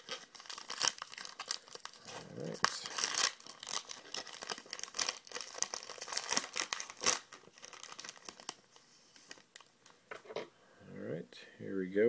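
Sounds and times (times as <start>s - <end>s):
card packaging tearing and crinkling: 0.0s - 8.6s.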